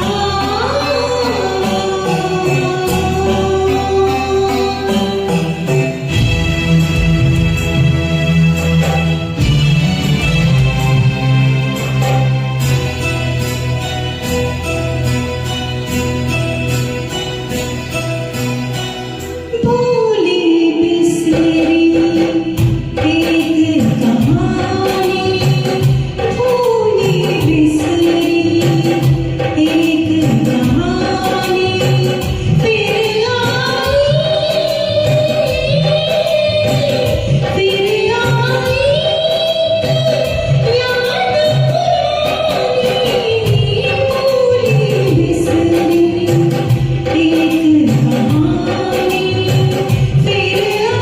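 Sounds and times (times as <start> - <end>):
woman singing: 0.0 - 7.0, 19.4 - 51.0
bass notes: 0.0 - 19.5
recorded backing music: 0.0 - 51.0
steady percussive beat: 1.7 - 19.4, 21.3 - 51.0.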